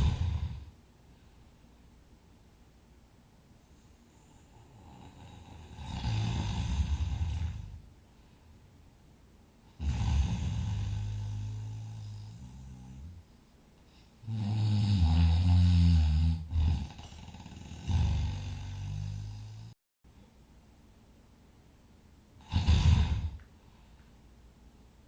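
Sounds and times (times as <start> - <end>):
person snoring: 0.0 - 0.7, 4.1 - 7.8, 9.8 - 13.2, 14.2 - 19.8, 22.4 - 23.4
quiet breaths: 0.0 - 2.2, 3.4 - 8.9, 9.6 - 20.4, 22.4 - 25.0.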